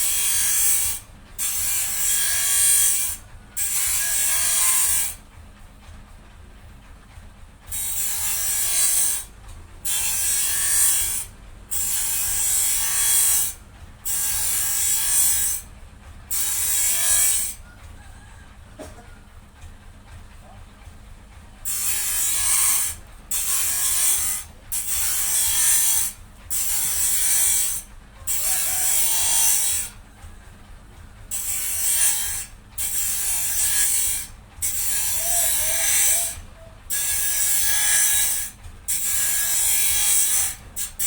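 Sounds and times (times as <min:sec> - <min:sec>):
power tool rasping wood: 0:00.0 - 0:05.2, 0:07.7 - 0:15.7, 0:16.3 - 0:17.6, 0:21.6 - 0:30.4, 0:31.2 - 0:41.0
steady low hum: 0:09.2 - 0:28.4.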